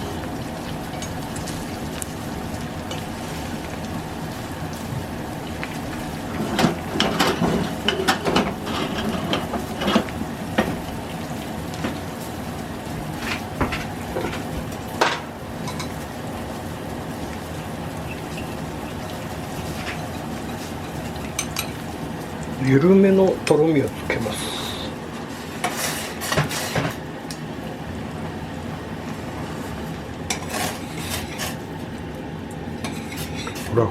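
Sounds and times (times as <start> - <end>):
sizzle-like hiss: 0.0 - 33.9
utensils clattering against pan: 6.3 - 10.8, 13.2 - 16.0, 25.5 - 27.0, 30.3 - 31.6, 32.8 - 33.8.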